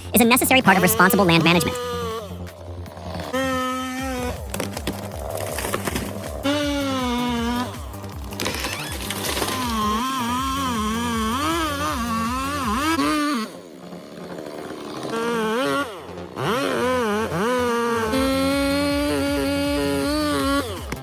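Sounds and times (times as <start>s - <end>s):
chainsaw revving and cutting: 12.2s - 21.0s.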